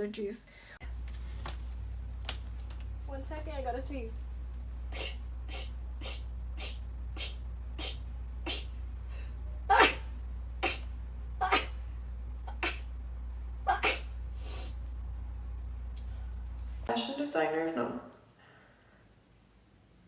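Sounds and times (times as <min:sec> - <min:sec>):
woman sneezing: 0:09.6 - 0:11.8, 0:13.7 - 0:14.1.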